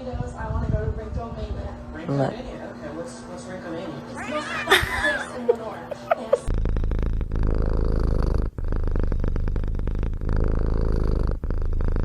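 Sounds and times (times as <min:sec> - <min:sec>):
cat purring: 0:05.9 - 0:12.0.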